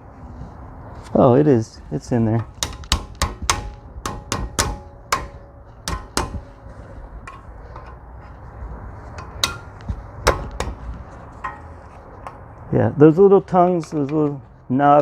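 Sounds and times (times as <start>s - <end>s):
metallic clicks and knocks: 2.4s - 8.0s, 9.1s - 12.4s.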